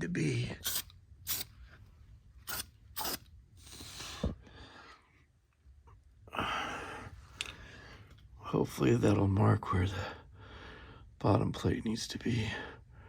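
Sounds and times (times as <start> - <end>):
spray paint can hissing: 0.6 - 1.5, 2.5 - 4.0.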